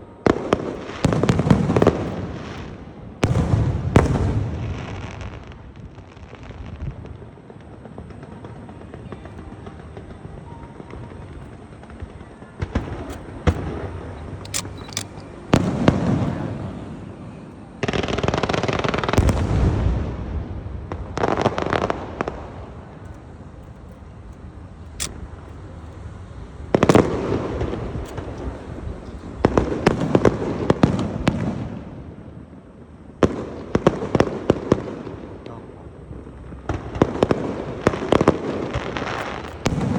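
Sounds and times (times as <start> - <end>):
fireworks crackling bursts: 0.0 - 14.8, 15.4 - 39.9
fireworks bangs: 0.2 - 23.0, 26.7 - 32.2, 36.4 - 39.9.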